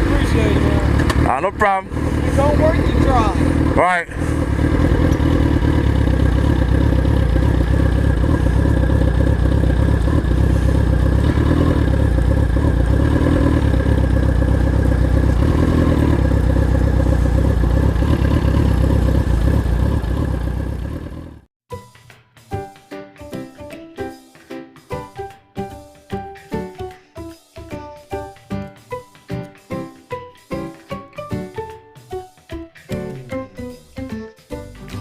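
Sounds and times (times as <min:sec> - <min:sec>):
motorcycle engine running: 0:00.0 - 0:21.5
music: 0:21.7 - 0:35.0.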